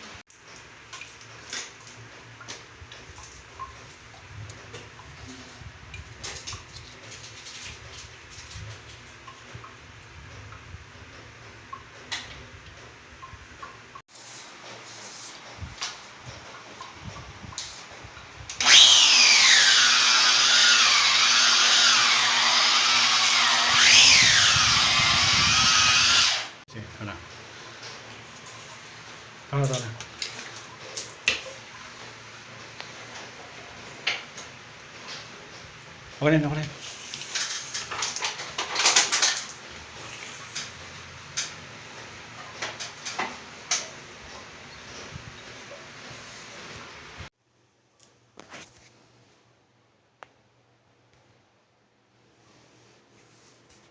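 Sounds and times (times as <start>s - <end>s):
electric power tool whining: 18.6s - 26.6s.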